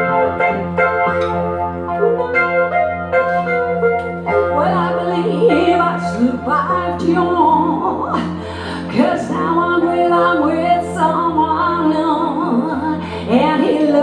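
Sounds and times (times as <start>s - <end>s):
sustained accompaniment chords: 0.0s - 14.0s
woman singing slow song: 4.6s - 14.0s.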